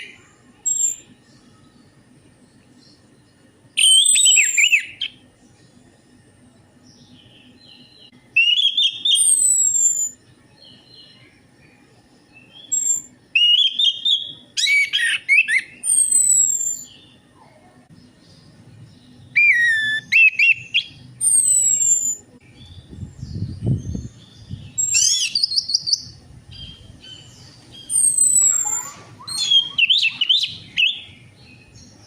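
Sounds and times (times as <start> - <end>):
thrush singing whistled song: 0.0 - 1.8, 3.7 - 5.2, 7.0 - 11.3, 12.3 - 17.2, 19.1 - 32.0.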